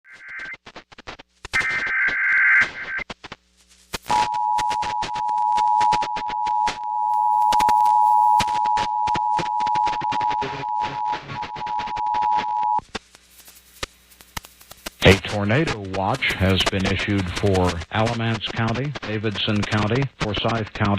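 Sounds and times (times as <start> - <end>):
crackling clicks: 0.5 - 20.9
harsh two-tone alert signal: 4.1 - 12.8.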